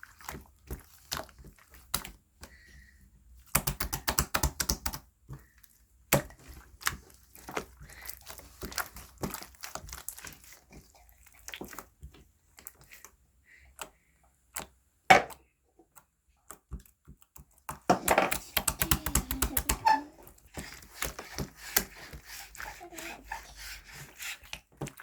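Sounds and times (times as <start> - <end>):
slime squished by hand: 3.4 - 23.3.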